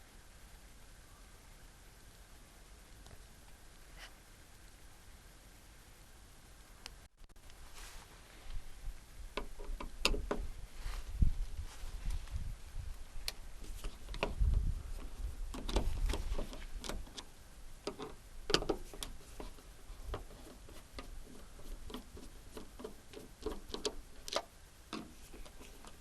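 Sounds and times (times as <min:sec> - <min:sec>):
car door lock clicks and knocks: 0:09.4 - 0:10.4.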